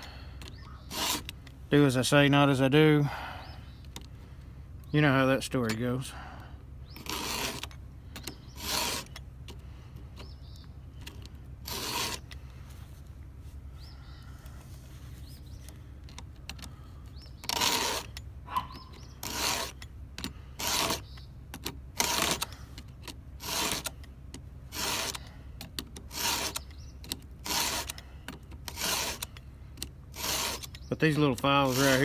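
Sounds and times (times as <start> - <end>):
file strokes on chainsaw chain: 0.8 - 1.3, 7.0 - 9.2, 11.6 - 12.3, 17.4 - 18.2, 19.1 - 21.1, 22.0 - 22.5, 23.4 - 24.0, 24.7 - 25.3, 26.0 - 28.0, 28.6 - 29.4, 30.1 - 32.0.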